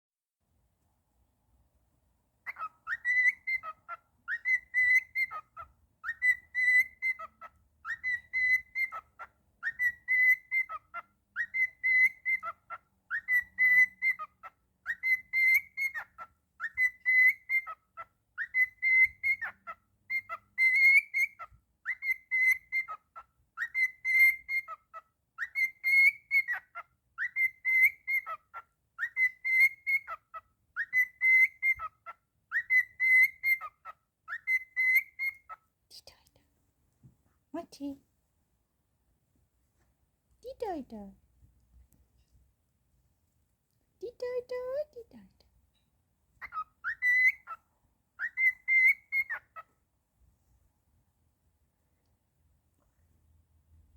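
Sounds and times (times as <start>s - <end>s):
cockatiel whistling: 2.5s - 35.6s, 46.4s - 47.6s, 48.2s - 49.6s.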